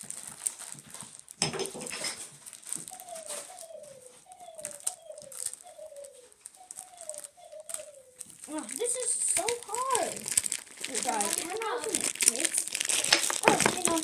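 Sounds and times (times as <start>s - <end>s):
plastic packaging crinkling: 0.0s - 14.0s.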